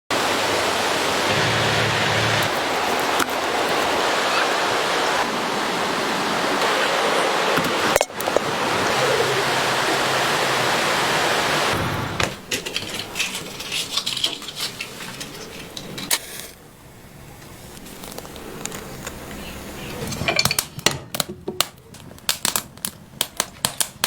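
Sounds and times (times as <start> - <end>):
mountain stream rushing: 0.1 - 12.2
cooking gear clicks and knocks: 2.4 - 4.0, 12.2 - 16.4, 19.9 - 24.0.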